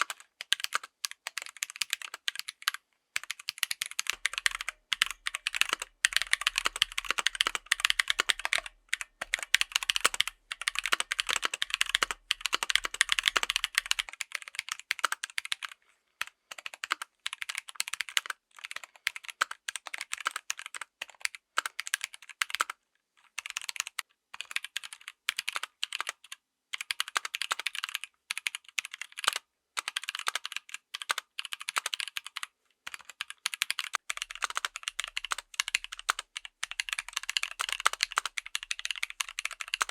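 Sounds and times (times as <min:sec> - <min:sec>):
mechanical keyboard keystroke clacks: 0:00.0 - 0:15.7, 0:26.8 - 0:39.9.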